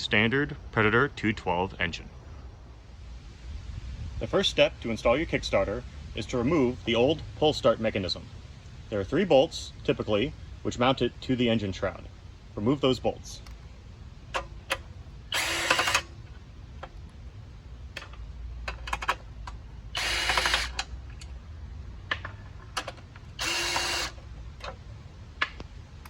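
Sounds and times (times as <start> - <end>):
ratcheting tool rattle: 14.4 - 16.2, 18.0 - 21.3, 22.2 - 24.8
small handling clicks: 17.9 - 21.4, 22.0 - 26.0.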